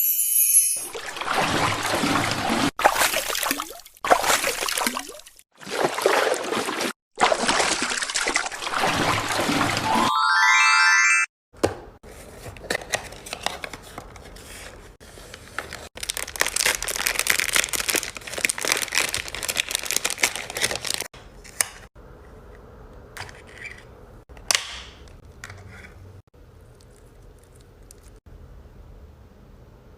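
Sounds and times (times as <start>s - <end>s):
crinkling of makeup packaging: 15.2s - 21.1s.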